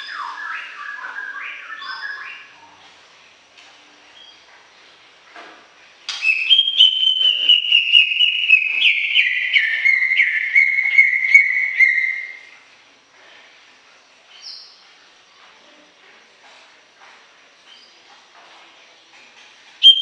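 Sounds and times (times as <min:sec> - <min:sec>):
bird singing whistled notes: 0:00.0 - 0:02.5, 0:06.1 - 0:12.6, 0:19.8 - 0:20.0.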